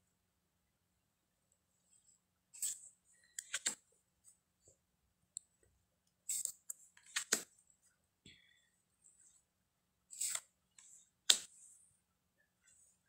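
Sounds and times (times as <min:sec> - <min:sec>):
cards sliding and tapping: 0:02.6 - 0:03.8, 0:06.3 - 0:07.5, 0:10.1 - 0:11.6.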